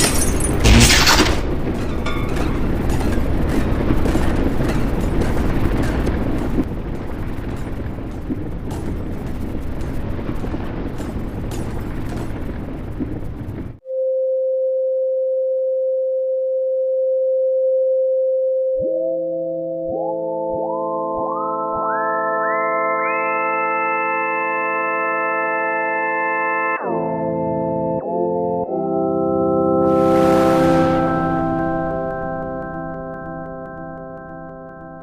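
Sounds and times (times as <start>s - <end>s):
loud rumbling: 0.0s - 13.8s, 29.9s - 32.9s.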